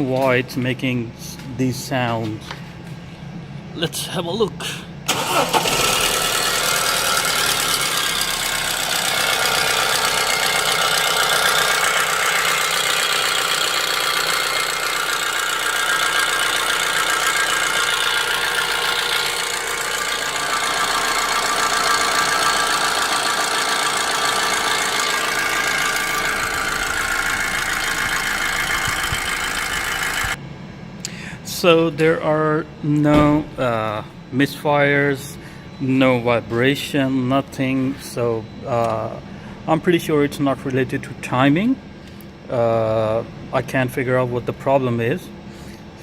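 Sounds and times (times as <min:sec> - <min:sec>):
car engine idling with rattle: 0:05.1 - 0:30.4.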